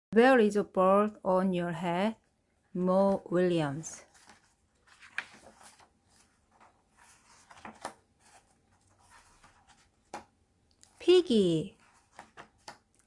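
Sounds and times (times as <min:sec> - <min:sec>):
book pages rustling: 0:03.1 - 0:13.0.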